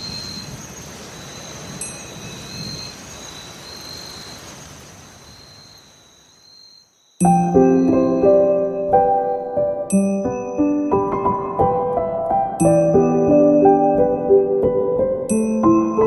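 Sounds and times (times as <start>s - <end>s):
rain-like hiss: 0.0s - 10.2s
high sustained chiming tones: 1.8s - 3.0s, 7.2s - 11.4s, 15.3s - 16.0s
music track: 7.2s - 16.0s.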